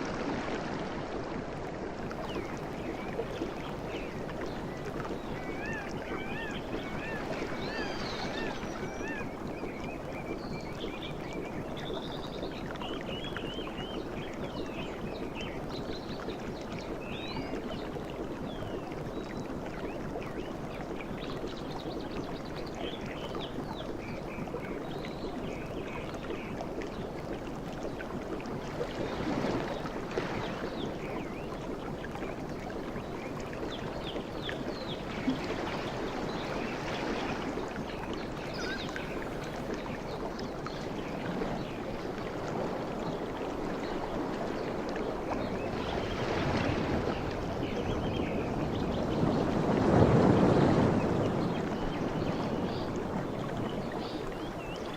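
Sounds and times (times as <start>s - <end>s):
songbirds chirping and warbling: 2.3s - 17.6s, 37.5s - 41.0s.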